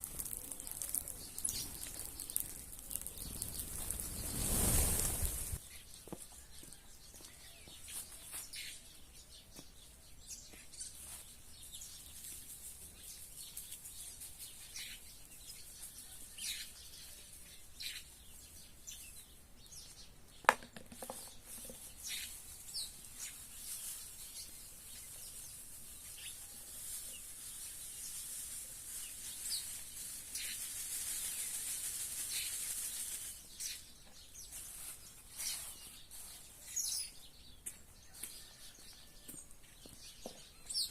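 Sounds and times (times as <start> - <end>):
small birds chirping: 0.0 - 40.9
wings flapping: 0.2 - 5.6, 30.3 - 33.4.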